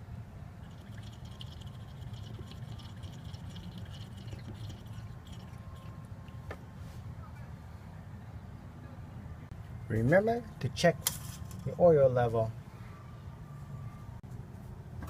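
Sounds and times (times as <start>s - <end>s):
low steady rumble: 0.0s - 11.8s
oil trickling through funnel: 0.6s - 6.6s.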